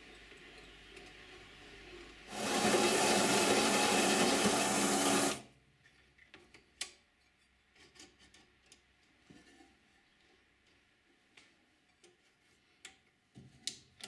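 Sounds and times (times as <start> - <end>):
saw cutting metal rasping: 2.3 - 5.4.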